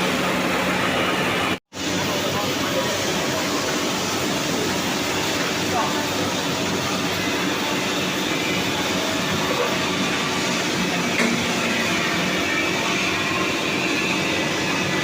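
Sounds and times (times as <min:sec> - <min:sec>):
rip saw machine running: 0:00.0 - 0:15.0.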